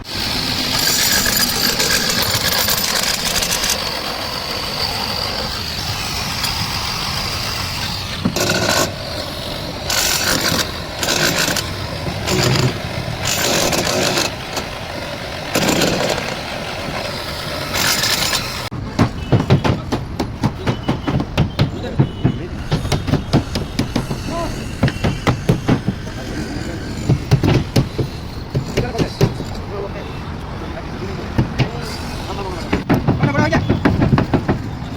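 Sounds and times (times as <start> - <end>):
machine engine running: 0.0 - 18.7.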